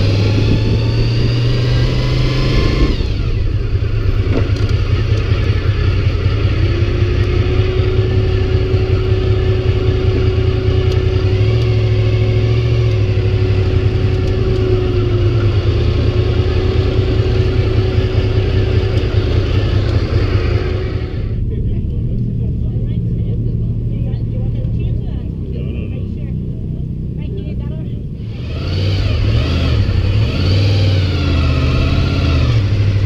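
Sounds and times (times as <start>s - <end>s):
motorcycle engine cruising: 0.0s - 33.0s.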